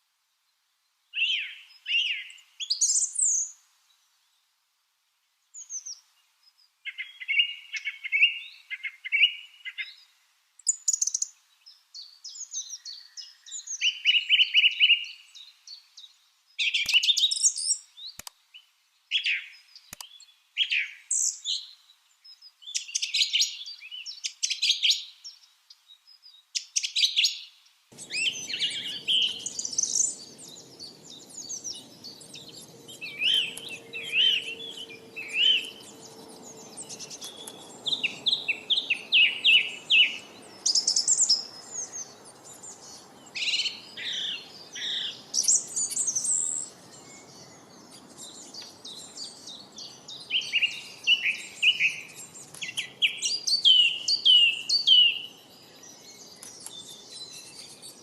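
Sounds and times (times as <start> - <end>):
faint steady hiss: 0.0 - 26.8, 27.4 - 58.0
lovebirds chirping: 26.1 - 58.0.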